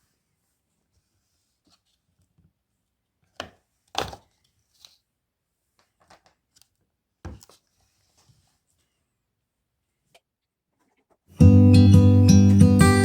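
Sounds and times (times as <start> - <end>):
knocks and rustles of handling: 5.7 - 9.0.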